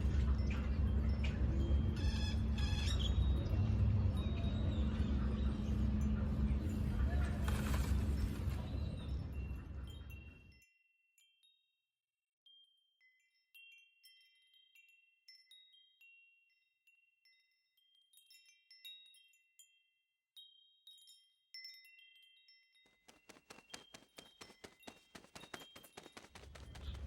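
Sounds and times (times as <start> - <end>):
outdoor background noise: 0.0 - 10.5, 23.0 - 27.0
wind chimes ringing: 8.1 - 11.6, 12.5 - 27.0.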